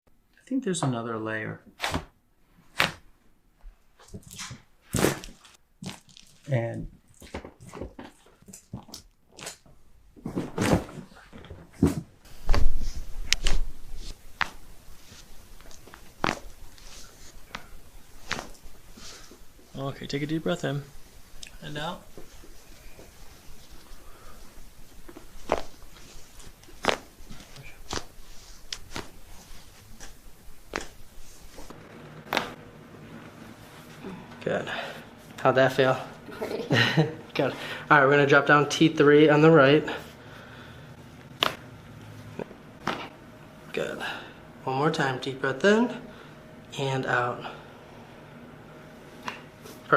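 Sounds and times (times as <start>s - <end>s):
rustling on treatment table: 10.2s - 34.0s.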